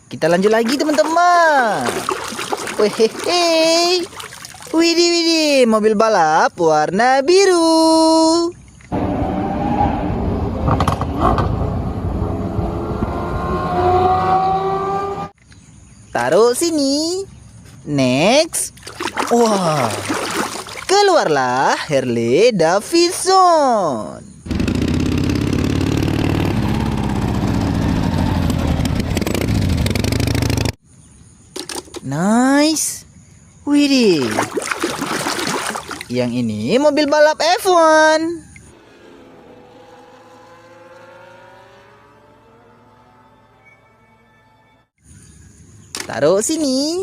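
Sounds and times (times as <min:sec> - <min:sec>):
racing car engines revving: 0:08.9 - 0:15.4, 0:38.7 - 0:44.0
motorcycle engine running: 0:24.5 - 0:30.8.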